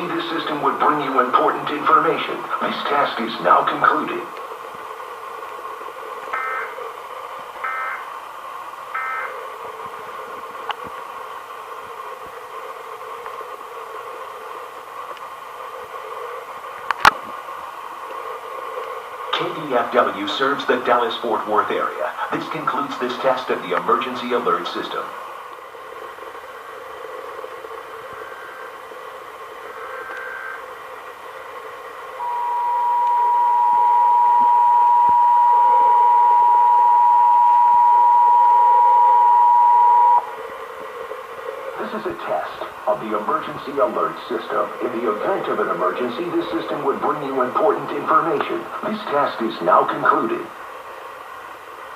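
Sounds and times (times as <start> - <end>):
steady hiss: 0.0 - 51.9
shrill warbling data tones: 6.3 - 6.8, 7.6 - 8.1, 8.9 - 9.4, 32.2 - 40.3.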